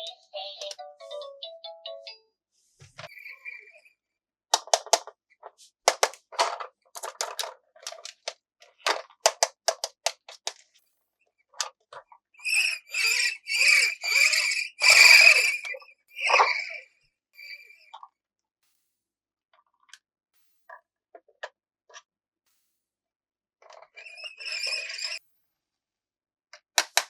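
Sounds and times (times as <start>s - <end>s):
plastic toy pieces clicking: 4.6s - 5.2s, 5.9s - 10.8s, 26.8s - 27.0s
short squeaky bursts: 12.4s - 18.0s, 24.0s - 25.2s.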